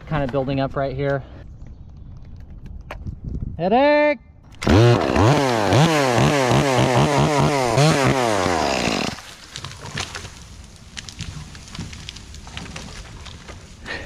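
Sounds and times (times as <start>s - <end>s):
chainsaw cutting through a limb: 4.6s - 10.3s.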